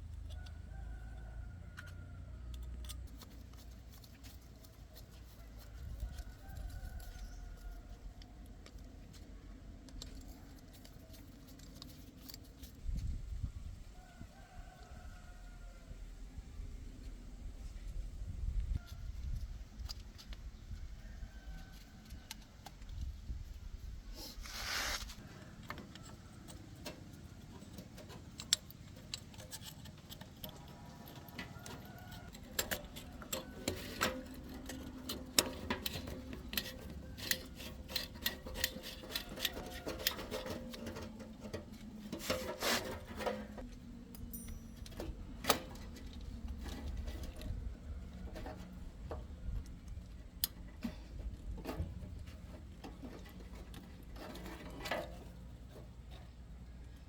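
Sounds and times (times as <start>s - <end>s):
hand tools clicking on metal: 25.6s - 55.4s.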